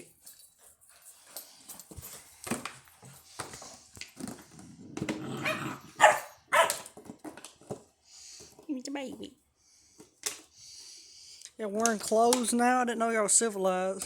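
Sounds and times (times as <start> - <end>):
puppy growling: 4.6 - 6.8
puppy barking: 5.4 - 6.9.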